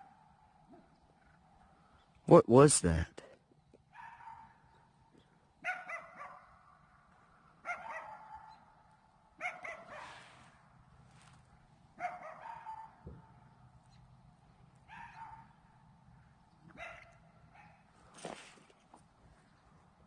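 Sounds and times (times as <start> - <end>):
faint dog barking: 3.9 - 4.6, 5.6 - 6.6, 7.6 - 8.7, 9.4 - 10.6, 12.0 - 13.3, 14.9 - 15.6, 16.7 - 17.9.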